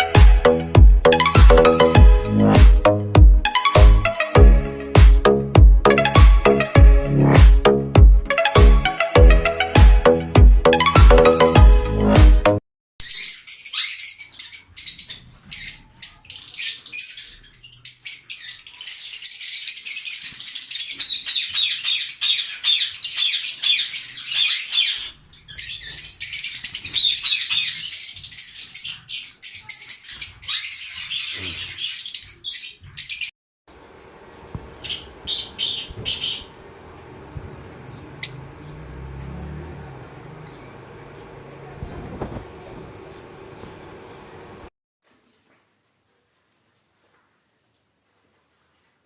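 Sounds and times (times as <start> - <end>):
lovebirds chirping: 13.0 - 33.3, 34.3 - 42.1.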